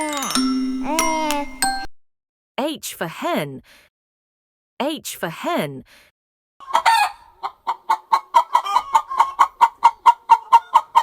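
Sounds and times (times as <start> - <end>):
hen clucking: 6.6 - 11.0.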